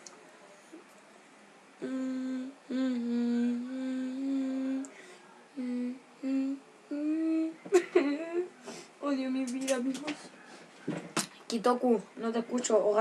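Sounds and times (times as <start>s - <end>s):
person humming: 1.8s - 8.5s.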